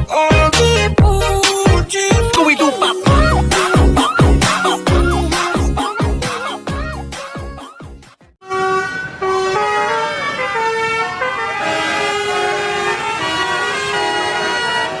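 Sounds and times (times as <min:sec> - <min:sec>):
air horns playing a tune: 0:08.4 - 0:15.0.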